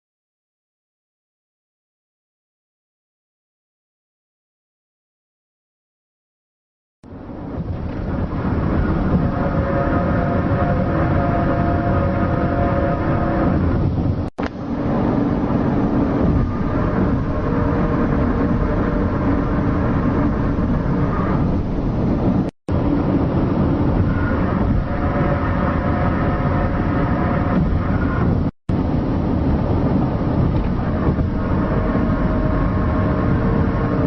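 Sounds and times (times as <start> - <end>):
loud rumbling drone: 7.1 - 34.0.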